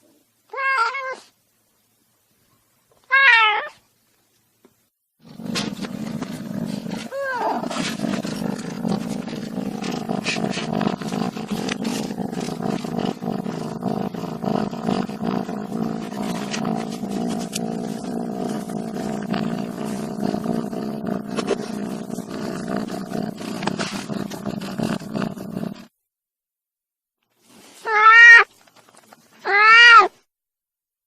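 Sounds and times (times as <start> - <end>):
cat meowing: 0.5 - 1.2, 3.1 - 3.8, 7.1 - 7.6, 27.8 - 28.5, 29.4 - 30.2
low rough cat vocalisation: 5.2 - 25.9.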